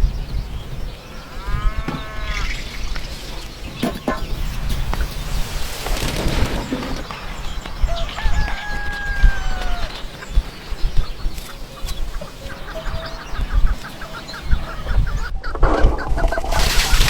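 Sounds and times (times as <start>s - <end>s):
chicken calling: 7.8s - 17.0s
rooster crowing: 7.9s - 10.1s.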